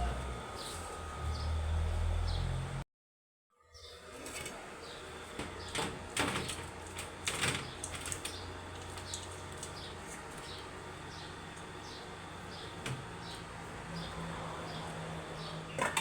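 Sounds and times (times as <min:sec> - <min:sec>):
steady low hum: 0:00.0 - 0:02.8.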